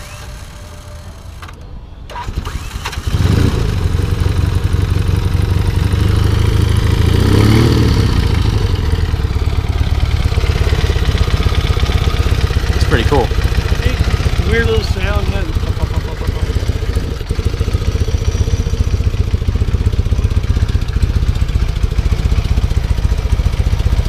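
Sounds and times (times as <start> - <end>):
electric starter cranking engine: 0.0 - 3.3
engine running loudly: 3.1 - 24.0.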